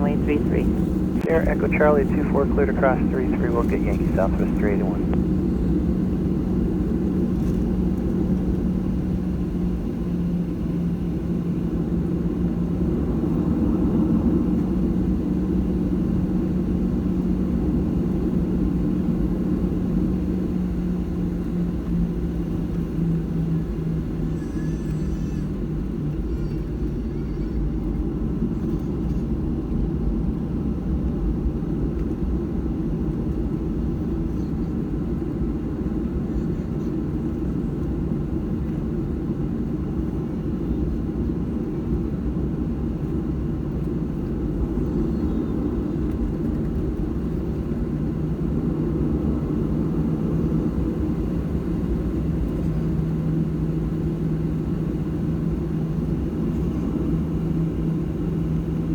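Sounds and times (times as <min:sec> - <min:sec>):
steady engine hum: 0:00.0 - 0:07.2
aircraft cabin low rumble: 0:00.0 - 0:58.9.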